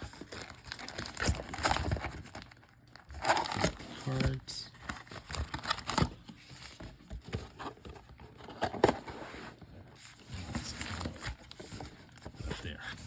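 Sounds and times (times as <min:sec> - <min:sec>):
card packs rustling: 0:00.0 - 0:13.0
card packs tapping: 0:03.1 - 0:08.0.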